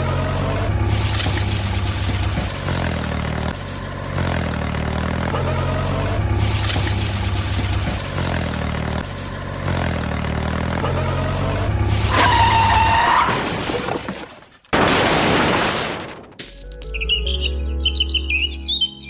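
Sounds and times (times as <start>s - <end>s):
engine running: 0.0s - 13.2s
loud crashing and shattering: 12.2s - 16.5s.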